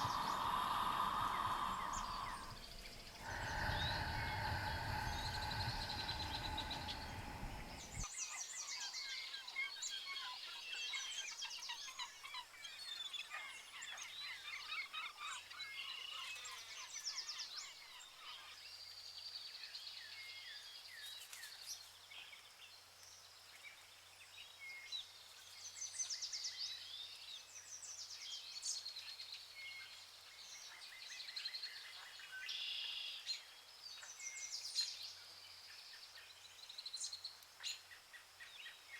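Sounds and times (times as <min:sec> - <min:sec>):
birds chirping and singing: 0:00.0 - 0:08.1.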